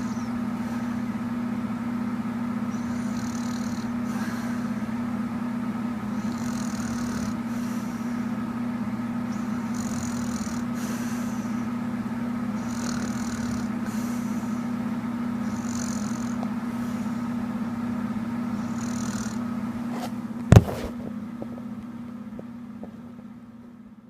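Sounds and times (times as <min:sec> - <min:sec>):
soft hissing breaths: 0:00.0 - 0:20.2
sharp knock: 0:20.5 - 0:20.9.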